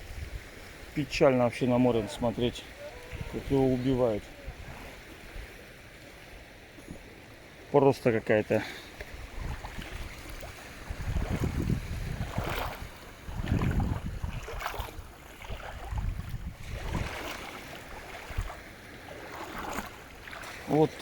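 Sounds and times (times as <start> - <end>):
water splashes: 0.0 - 21.0
wind buffeting microphone: 1.9 - 5.6, 9.1 - 18.6.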